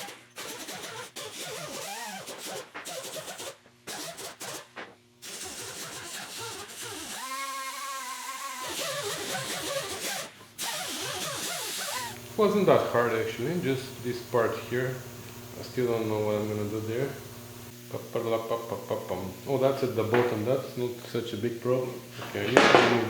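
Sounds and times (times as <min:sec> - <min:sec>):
wire wheel scrubbing metal: 0:00.0 - 0:17.6
steady whine: 0:11.9 - 0:23.0.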